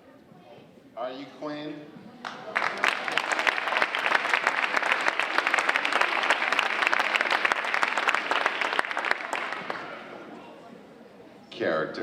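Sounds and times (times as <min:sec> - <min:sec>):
audience applauding: 0:02.2 - 0:10.1.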